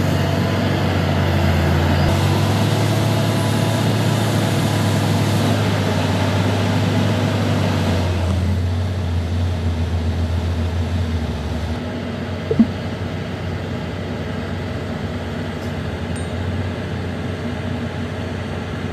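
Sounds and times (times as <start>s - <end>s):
brief sharp sound: 12.5s - 12.8s.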